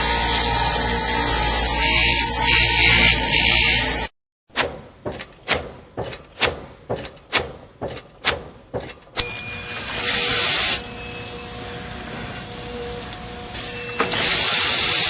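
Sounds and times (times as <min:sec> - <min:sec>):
machinery sharp knocks: 0:04.5 - 0:09.2
machinery running hum: 0:09.2 - 0:15.0.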